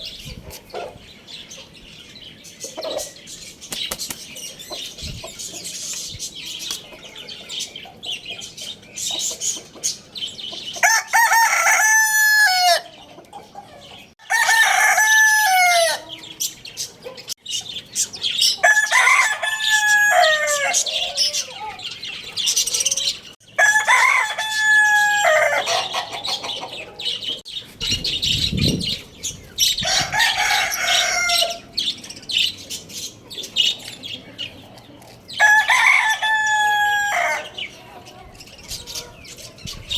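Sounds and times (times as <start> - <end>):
birds chirping: 0.0 - 39.9
hens clucking: 0.2 - 1.8, 24.9 - 27.5
rooster crowing: 10.8 - 12.9, 14.2 - 16.2, 18.6 - 21.4, 23.5 - 26.1, 29.8 - 31.7, 35.4 - 37.6.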